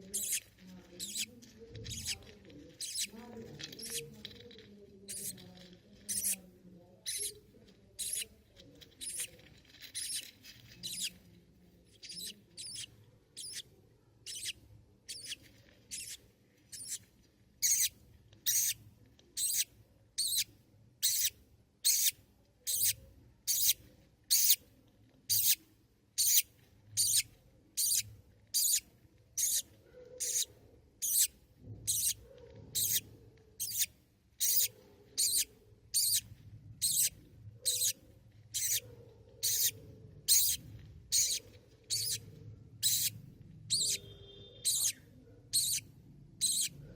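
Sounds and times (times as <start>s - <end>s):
budgie chick cheeping: 0.0s - 1.3s, 1.9s - 2.2s, 2.8s - 3.2s, 6.1s - 6.4s, 7.1s - 7.4s, 9.0s - 11.2s, 11.9s - 17.0s, 17.6s - 18.8s, 19.4s - 24.6s, 26.2s - 32.2s, 32.8s - 46.8s.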